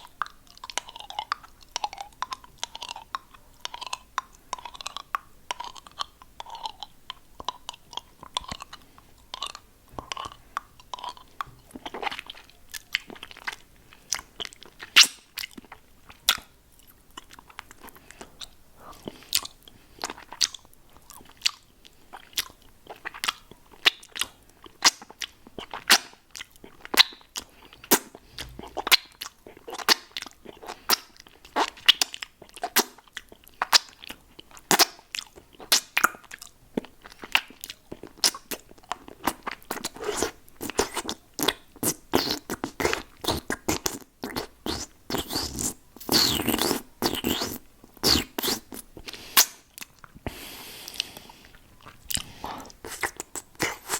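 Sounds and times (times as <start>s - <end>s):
wet mouth smacks: 39.2s - 53.9s.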